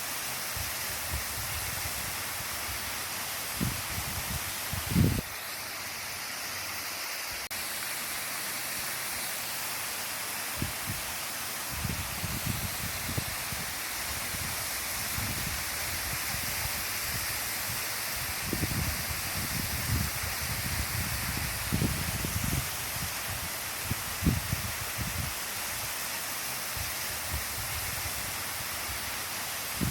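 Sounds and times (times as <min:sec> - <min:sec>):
waterfall rushing: 0:00.0 - 0:29.9
wind buffeting microphone: 0:03.6 - 0:05.2, 0:11.7 - 0:25.3.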